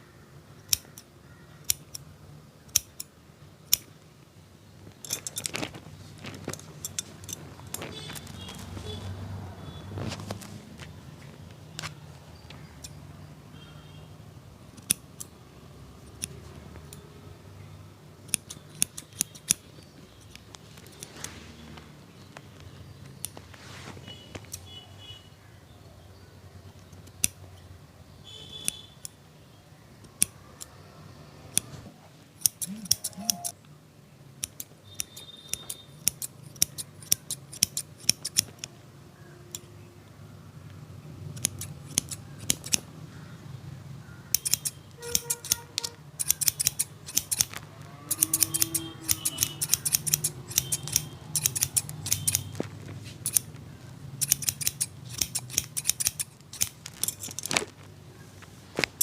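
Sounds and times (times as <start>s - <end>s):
scissors snipping hair: 0.6s - 2.1s, 2.7s - 3.1s, 5.0s - 9.0s, 11.8s - 13.0s, 14.8s - 15.4s, 16.0s - 17.1s, 18.3s - 21.3s, 32.4s - 33.6s, 34.4s - 38.7s, 41.3s - 42.9s, 44.2s - 53.6s, 54.2s - 57.8s.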